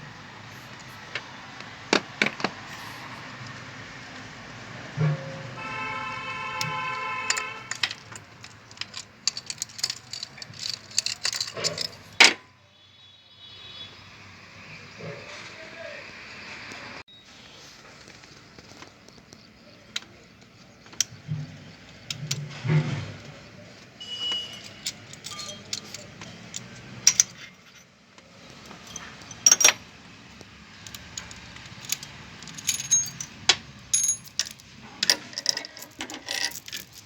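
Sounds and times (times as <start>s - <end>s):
metallic clinks of hand tools: 24.5s - 26.2s, 31.8s - 37.0s.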